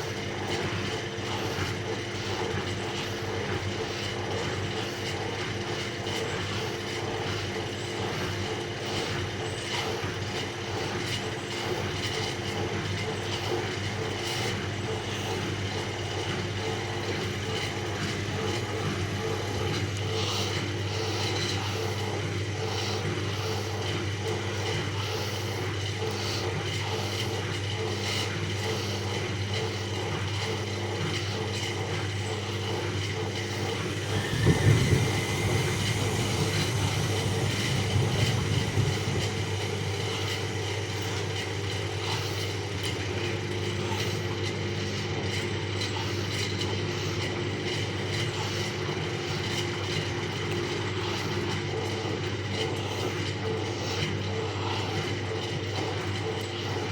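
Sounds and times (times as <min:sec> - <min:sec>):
washing machine motor hum: 0:00.0 - 0:56.9
uneven rumble: 0:33.2 - 0:43.2.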